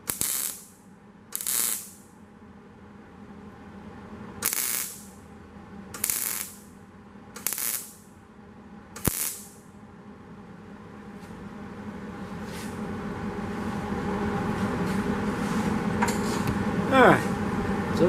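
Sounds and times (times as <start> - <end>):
welder hissing bursts: 7.4 - 8.0.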